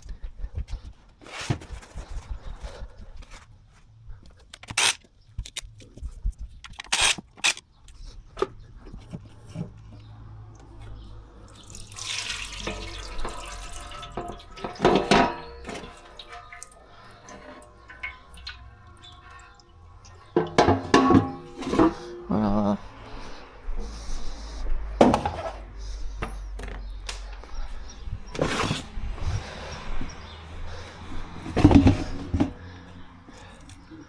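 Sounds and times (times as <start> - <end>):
tools clicking and knocking: 4.3 - 6.0, 6.6 - 9.1
oil dripping: 7.6 - 22.3
metallic ringing: 12.6 - 22.4.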